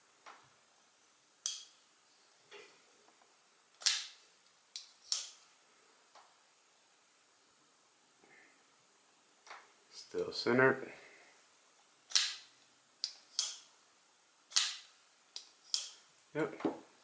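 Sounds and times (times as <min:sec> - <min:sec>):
folding knife blade clicks: 0:14.5 - 0:14.8, 0:15.4 - 0:16.0.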